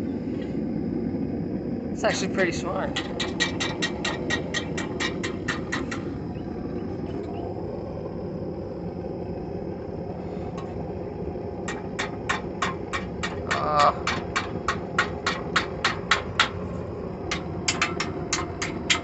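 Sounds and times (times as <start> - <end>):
forge roaring: 0.0 - 19.0
hammer striking steel on anvil: 17.3 - 19.0.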